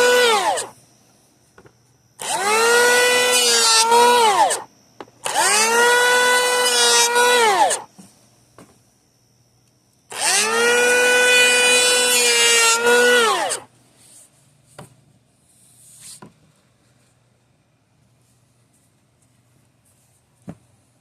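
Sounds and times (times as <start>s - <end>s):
electric planer whining: 0.0s - 0.7s, 2.2s - 7.9s, 10.1s - 13.7s.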